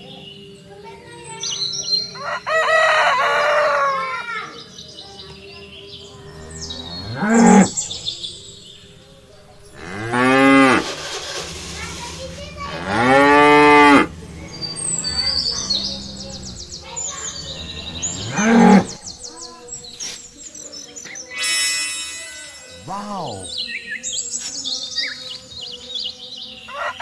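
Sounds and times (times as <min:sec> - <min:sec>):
birds chirping faintly: 0:04.8 - 0:21.3
cattle mooing: 0:06.2 - 0:19.4.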